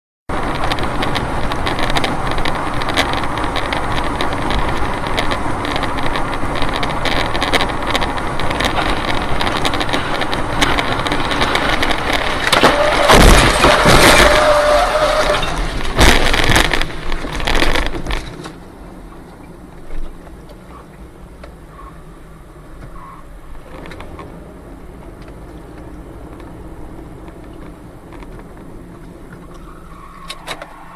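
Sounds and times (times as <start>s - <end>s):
crash impacts: 0.3s - 18.6s
vehicle and road noise: 0.3s - 30.9s.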